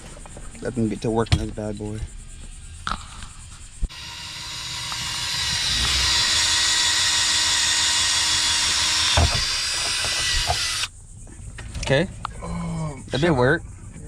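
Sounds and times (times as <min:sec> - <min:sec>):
power drill whirring: 0:03.9 - 0:10.9.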